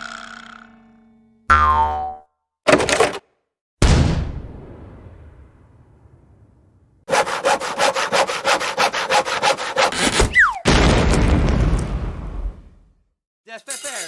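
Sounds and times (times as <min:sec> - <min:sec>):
cartoon hand saw cutting wood: 0:07.1 - 0:10.5
falling whistle: 0:10.3 - 0:10.7.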